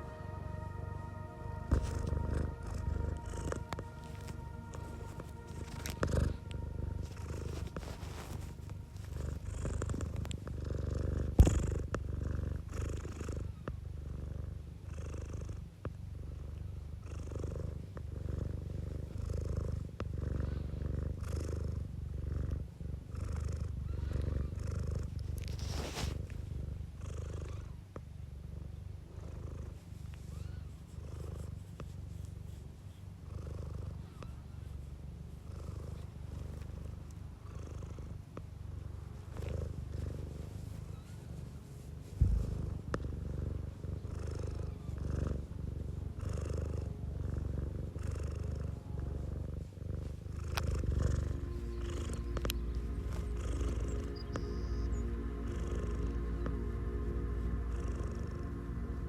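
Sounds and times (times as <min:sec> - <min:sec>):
cat purring: 0:00.0 - 0:59.0
soft rustle: 0:01.6 - 0:13.8, 0:16.4 - 0:28.2, 0:29.2 - 0:54.9.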